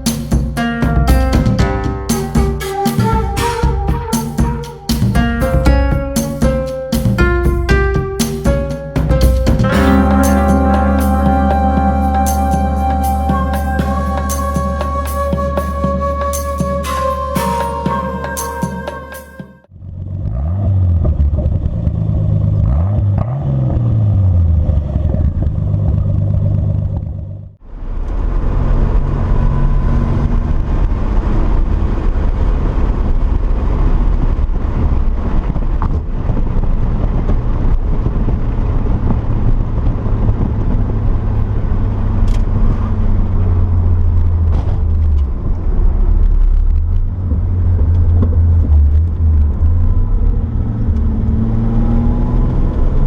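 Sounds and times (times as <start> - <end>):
car engine revving: 37.1 - 53.0.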